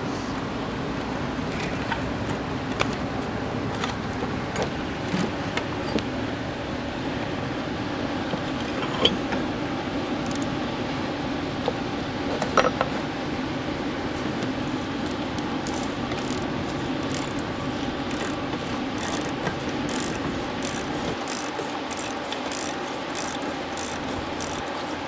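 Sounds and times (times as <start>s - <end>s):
steady background hum: 0.0s - 25.0s
ratchet wrench clicking: 10.2s - 10.5s, 15.0s - 25.0s.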